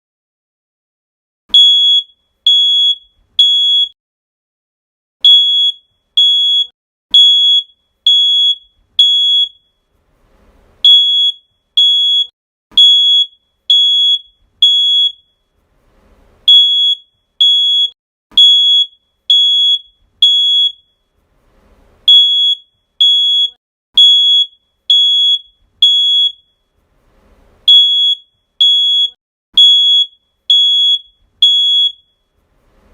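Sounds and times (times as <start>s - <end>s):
fire alarm beeping: 1.5s - 4.0s, 5.2s - 9.9s, 10.8s - 15.5s, 16.5s - 21.1s, 22.1s - 26.8s, 27.7s - 32.4s.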